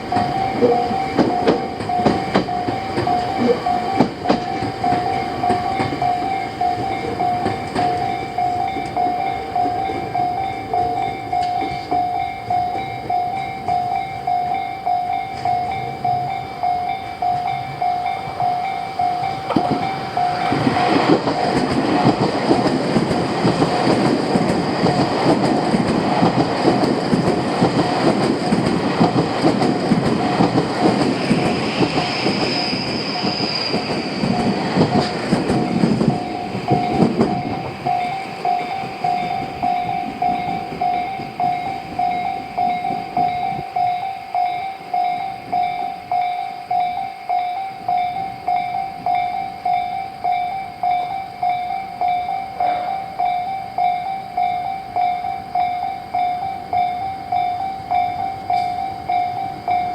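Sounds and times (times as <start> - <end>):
level crossing warning bell: 0.0 - 59.9
train rumbling and clattering: 0.0 - 59.9
high squeal: 30.2 - 40.0.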